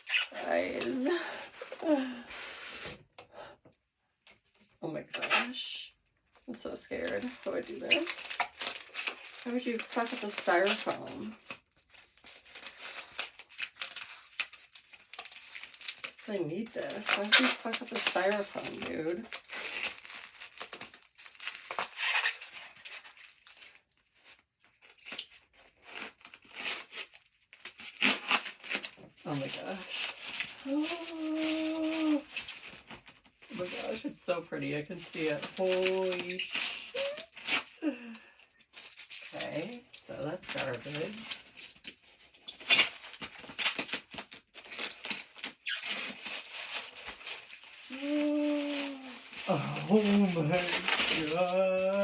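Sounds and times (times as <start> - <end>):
packaging crinkling and tearing: 0.0 - 3.1, 6.9 - 34.2, 34.9 - 52.0
person saying ooh: 30.6 - 32.2, 37.0 - 37.3, 47.9 - 52.0
styrofoam being pulled apart: 35.7 - 37.8, 42.5 - 52.0.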